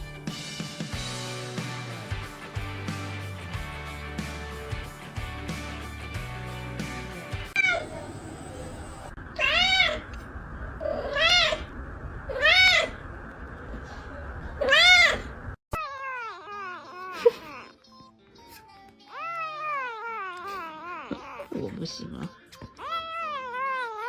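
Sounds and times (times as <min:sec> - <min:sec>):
cat meowing: 0:07.6 - 0:08.0, 0:09.4 - 0:10.1, 0:10.8 - 0:11.7, 0:12.3 - 0:13.0, 0:14.6 - 0:16.8.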